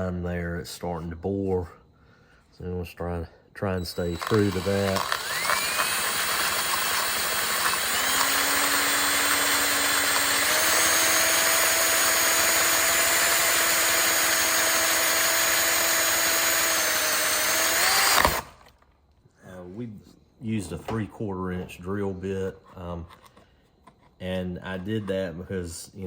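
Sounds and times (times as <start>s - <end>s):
power drill boring through plastic: 3.8s - 18.7s.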